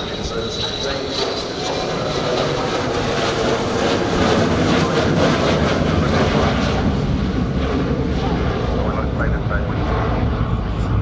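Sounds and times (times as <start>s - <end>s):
jet engines roaring: 0.0s - 11.0s.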